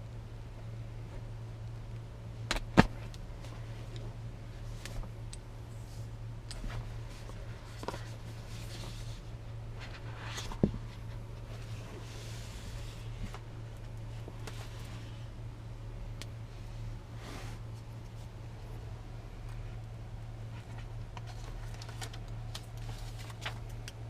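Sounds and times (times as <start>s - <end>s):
steady low hum: 0.0s - 24.0s
packaging rustling and sliding: 6.8s - 13.4s.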